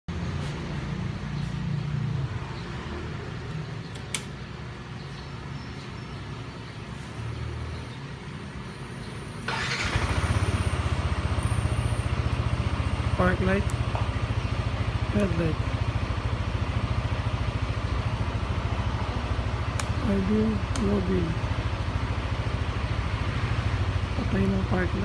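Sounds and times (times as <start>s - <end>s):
sharp click: 3.9s - 4.4s
scooter engine idling: 9.5s - 25.0s.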